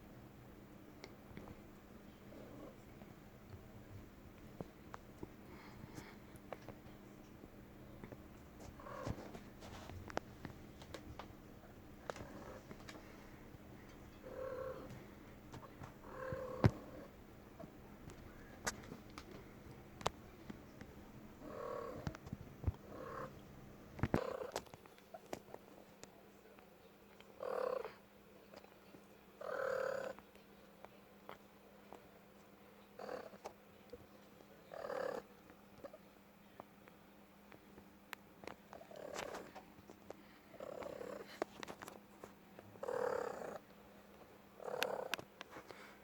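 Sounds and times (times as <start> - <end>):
cat purring: 1.0 - 24.6, 27.4 - 28.8, 29.4 - 30.2, 32.9 - 33.6, 34.7 - 36.0, 38.7 - 39.7, 40.5 - 41.4, 42.6 - 43.7, 44.6 - 45.9.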